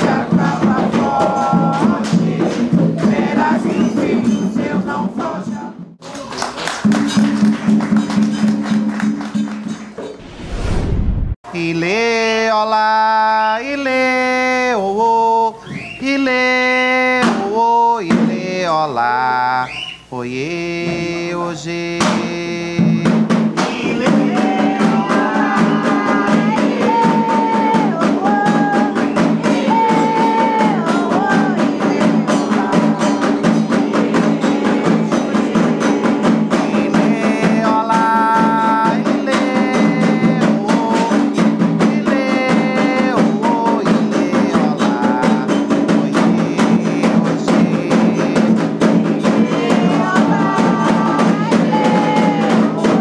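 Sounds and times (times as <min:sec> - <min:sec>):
hand drums playing fast rhythm: 0:00.0 - 0:06.1, 0:06.8 - 0:10.1, 0:17.2 - 0:18.7, 0:22.0 - 0:53.0.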